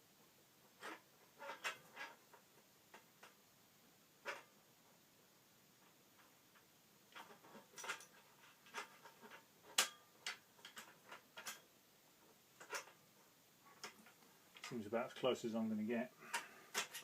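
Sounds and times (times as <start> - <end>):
clicks and knocks of metal parts: 0.8 - 3.4, 6.2 - 11.7, 12.6 - 13.0, 13.7 - 14.8, 16.2 - 17.0.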